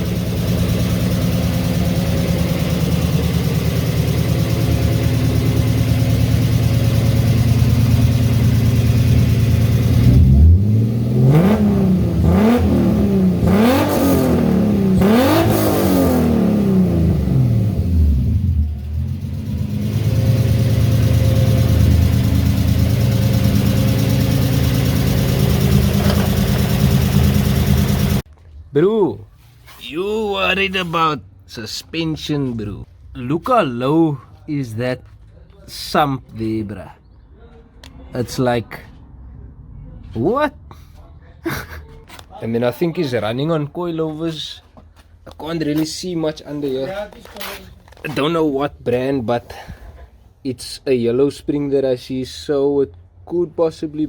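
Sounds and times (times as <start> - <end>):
engine revving: 0.0 - 28.2
car engine idling: 0.0 - 28.3.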